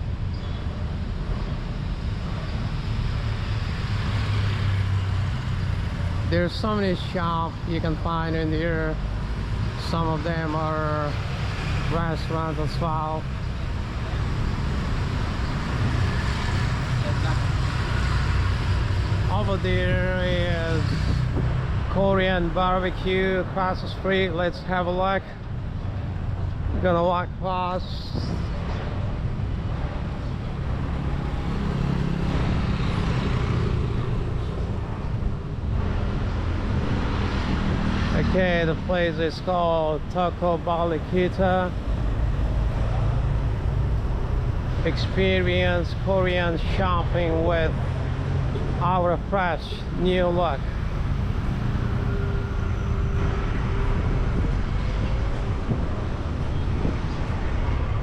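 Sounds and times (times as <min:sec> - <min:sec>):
road noise hum: 0:00.0 - 0:58.0
street traffic noise: 0:00.0 - 0:58.0
wind rumbling on microphone: 0:00.0 - 0:58.0.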